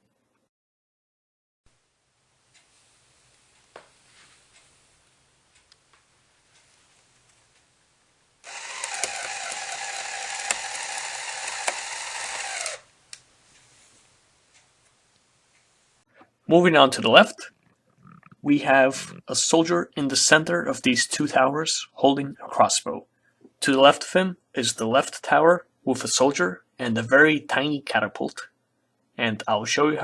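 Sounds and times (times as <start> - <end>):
faint hiss: 1.8 - 8.4, 12.8 - 24.2
toy motor whirring through gears: 8.4 - 12.9.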